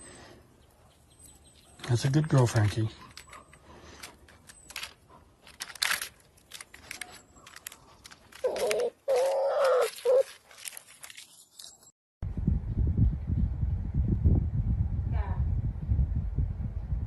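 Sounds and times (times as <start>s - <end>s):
small clicks and rustles: 0.9s - 11.9s.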